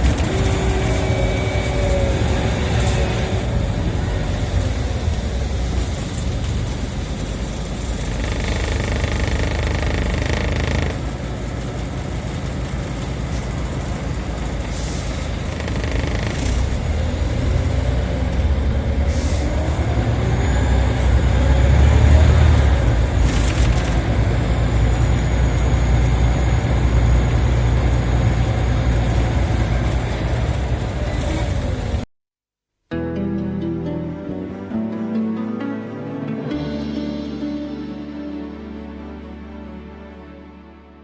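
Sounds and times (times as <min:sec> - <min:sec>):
rising whine: 0:00.0 - 0:11.0
bus engine and road rumble: 0:00.0 - 0:32.1
air brake hiss: 0:14.6 - 0:15.4, 0:19.0 - 0:19.7.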